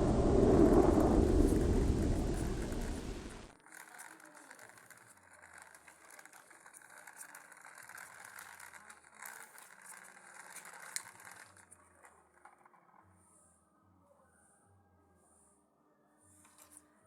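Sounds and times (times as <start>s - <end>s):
faint dense crackling: 0.0s - 3.5s.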